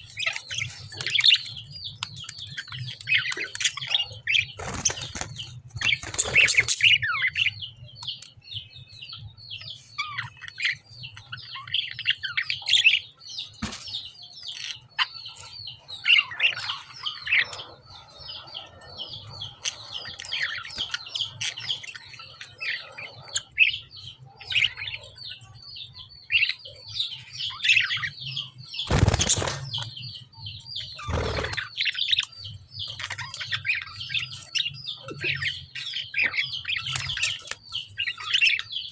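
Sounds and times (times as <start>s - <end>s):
lovebirds chirping: 0.0s - 38.9s
rustling bursts: 28.9s - 29.8s.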